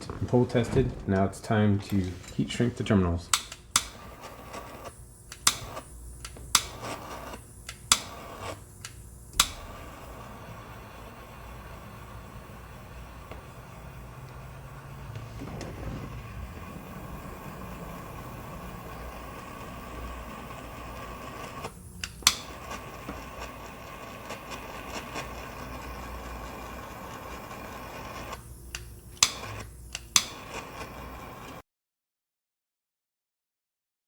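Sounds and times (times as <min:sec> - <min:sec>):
faint whine: 0:00.0 - 0:31.6
heat gun blowing: 0:01.8 - 0:31.6
sharp clicks: 0:03.3 - 0:09.8, 0:20.7 - 0:22.8, 0:28.3 - 0:30.7.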